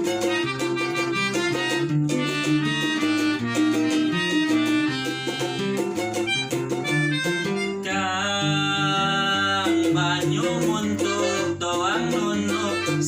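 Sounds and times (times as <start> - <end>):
band playing: 0.0 - 8.0.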